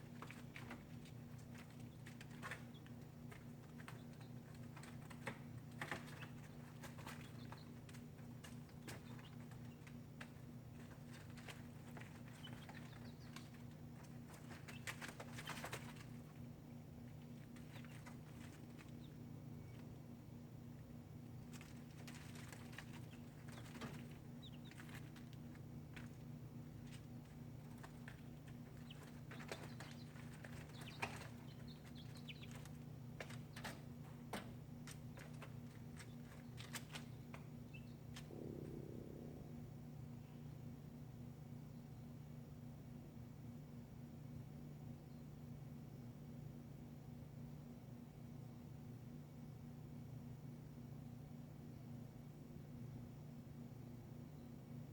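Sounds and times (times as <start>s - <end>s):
chickens pecking and scratching: 0.0s - 38.8s
steady low hum: 0.0s - 54.9s
low hum: 38.2s - 42.0s.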